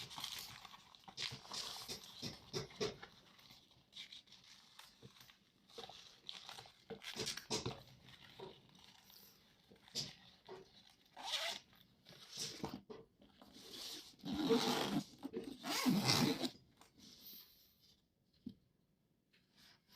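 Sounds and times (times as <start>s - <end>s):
zipper being pulled: 11.1s - 11.7s, 13.7s - 16.6s.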